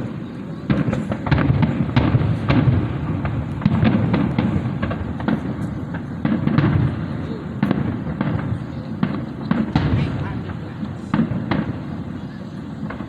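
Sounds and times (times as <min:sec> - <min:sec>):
fireworks bangs and crackles: 0:00.0 - 0:13.0.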